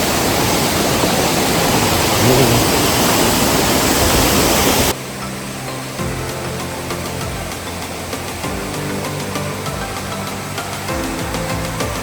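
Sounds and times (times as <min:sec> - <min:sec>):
waterfall rushing: 0:00.0 - 0:12.0
quiet background music: 0:04.9 - 0:12.0.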